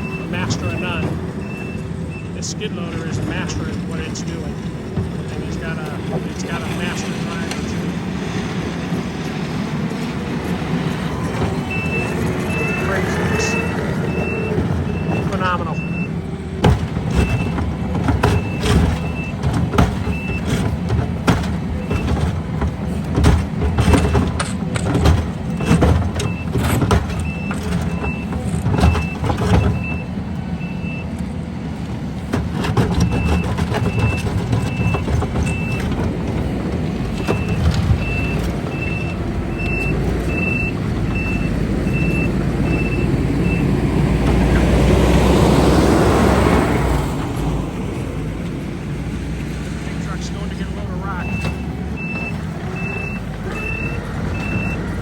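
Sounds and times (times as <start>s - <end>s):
reversing alarm beeping: 0.0s - 7.9s, 11.0s - 31.2s, 32.6s - 36.5s, 37.1s - 43.8s, 50.0s - 54.9s
diesel engine running: 0.0s - 55.0s
engine revving: 0.0s - 55.0s
metal clanks: 11.2s - 45.7s.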